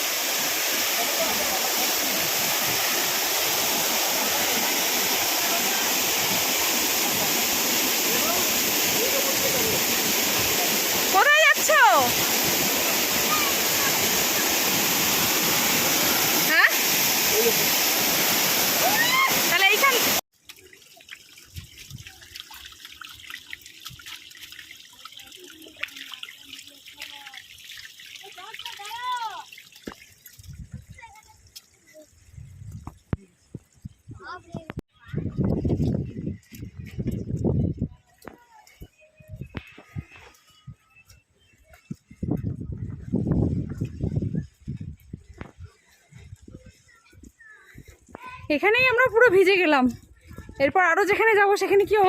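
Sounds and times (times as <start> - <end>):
waterfall roaring: 0.0 - 20.2
water dripping and trickling: 0.0 - 52.0.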